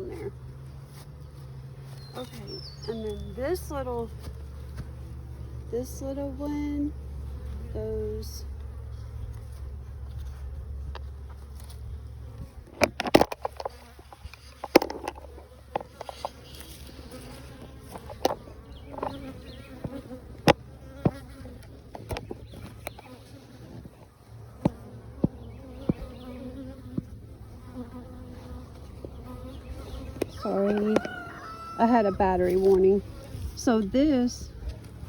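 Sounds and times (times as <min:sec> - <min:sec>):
honeybees buzzing: 0:00.0 - 0:35.0
hive parts clicking and knocking: 0:12.7 - 0:16.5, 0:17.9 - 0:23.2.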